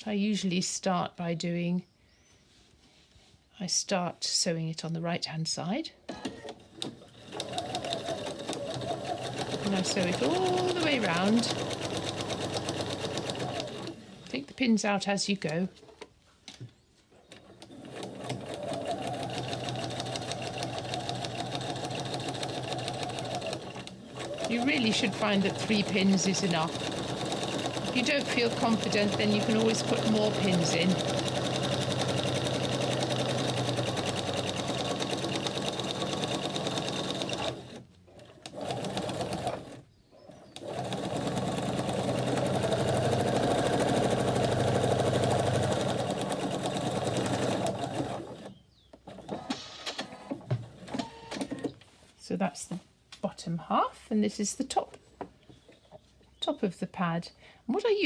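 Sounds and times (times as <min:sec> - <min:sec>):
sewing machine stitching: 0:06.2 - 0:14.4, 0:17.4 - 0:39.8, 0:40.4 - 0:51.7.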